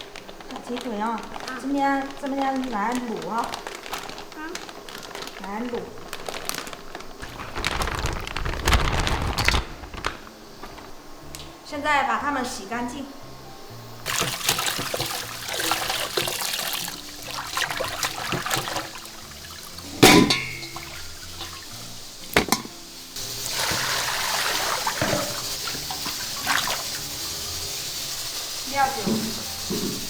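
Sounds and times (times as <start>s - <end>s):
tap water running and splashing: 0.0s - 5.4s, 14.0s - 30.0s
background music: 0.0s - 30.0s.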